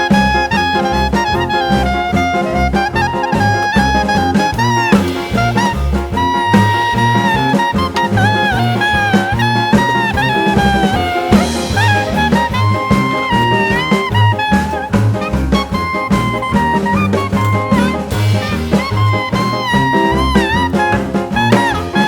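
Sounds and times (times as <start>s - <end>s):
upbeat swing jazz with brass: 0.0s - 22.0s.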